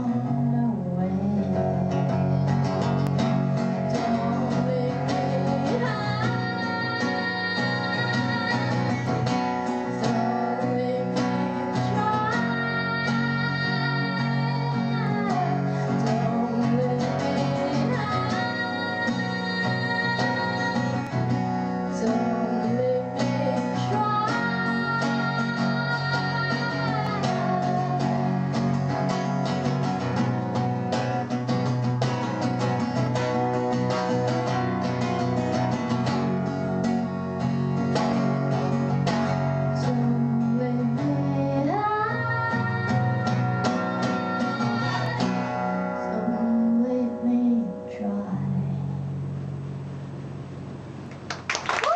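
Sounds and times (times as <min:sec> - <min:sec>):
woman singing: 0:00.0 - 0:29.4, 0:39.4 - 0:48.9
guitar accompaniment: 0:00.0 - 0:51.9.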